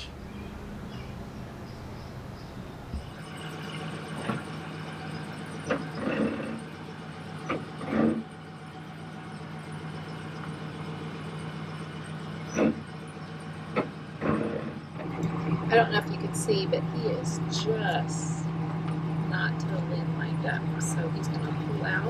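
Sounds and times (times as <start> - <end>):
vehicle engine idling: 0.0 - 3.4.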